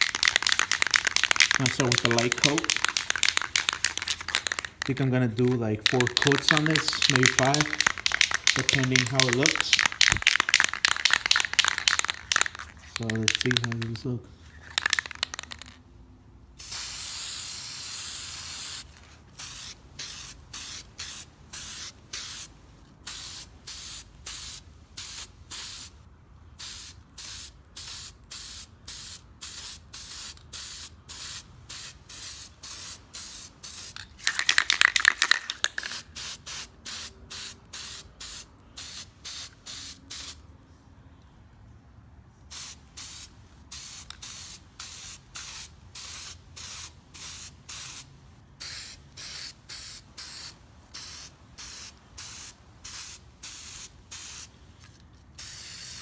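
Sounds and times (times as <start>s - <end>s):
spray paint can hissing: 0.0s - 14.0s, 14.6s - 15.8s, 16.6s - 22.5s, 23.1s - 25.9s, 26.6s - 40.4s, 42.5s - 54.6s, 55.4s - 56.0s.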